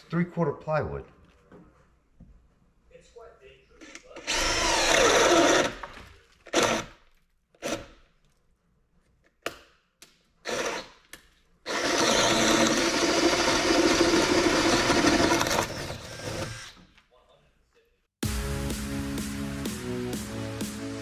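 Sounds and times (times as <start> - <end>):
cordless drill boring into wood: 4.2 - 7.0, 7.6 - 8.0, 10.4 - 11.0, 11.7 - 16.9.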